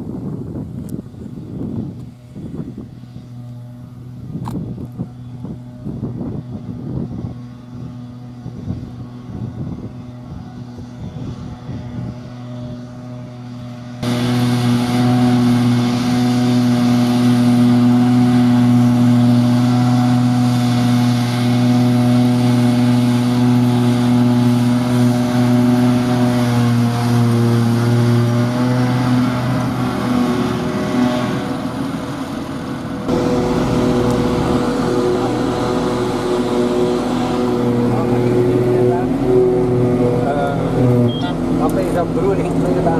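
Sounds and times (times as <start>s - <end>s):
farm machinery engine droning: 0.0s - 42.9s.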